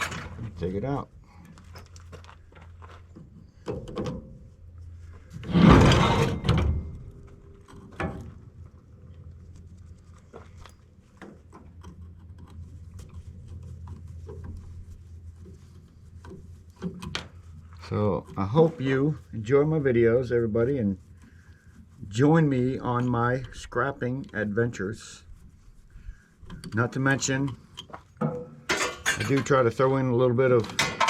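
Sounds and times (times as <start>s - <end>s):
metal clatter: 0.0s - 0.6s, 5.4s - 8.6s, 28.2s - 29.7s, 30.6s - 31.0s
steady low hum: 0.0s - 29.1s.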